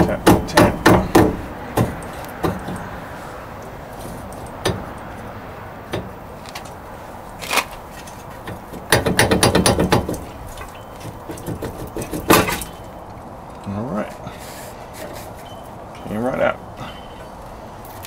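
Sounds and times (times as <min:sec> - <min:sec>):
hammer tapping on metal: 0:00.0 - 0:02.9, 0:08.5 - 0:12.8.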